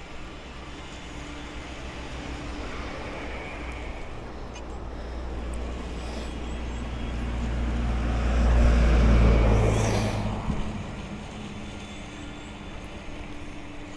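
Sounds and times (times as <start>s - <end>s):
vehicle passing by: 5.2s - 12.5s.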